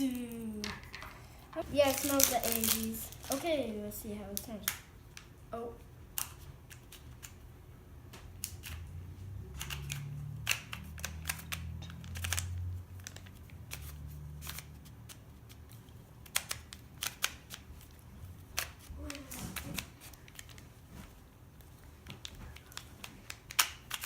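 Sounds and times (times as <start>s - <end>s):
puzzle cube plastic clicks: 9.6s - 17.9s, 22.2s - 24.0s.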